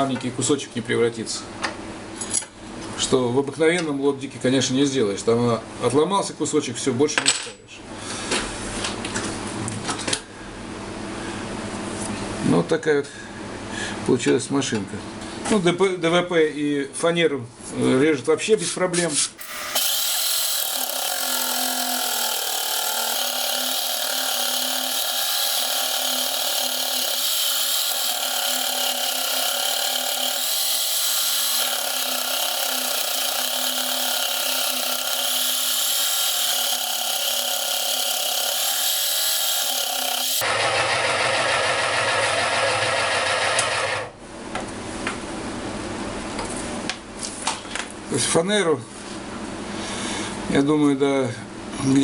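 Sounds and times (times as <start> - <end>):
scroll saw cutting wood: 19.4 - 44.1.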